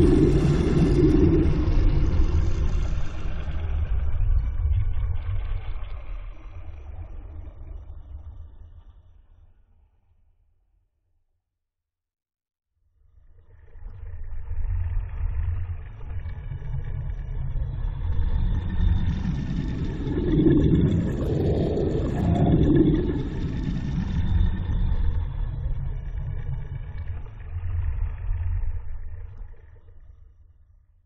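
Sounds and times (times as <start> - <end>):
deep swooshes: 0.0 - 3.5, 19.0 - 24.6
low bubbling rumble: 0.0 - 8.8, 14.0 - 30.4.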